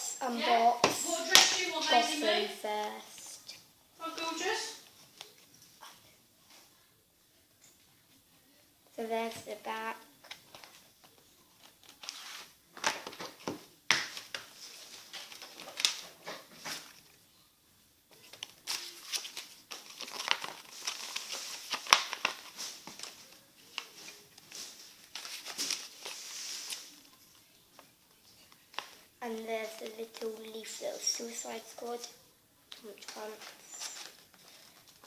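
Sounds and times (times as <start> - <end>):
plastic wrap tearing and crinkling: 18.3 - 27.0.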